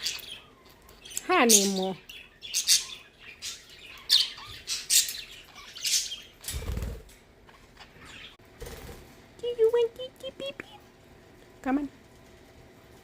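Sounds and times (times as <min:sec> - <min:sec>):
budgerigar chirps and squawks: 0:00.0 - 0:06.2.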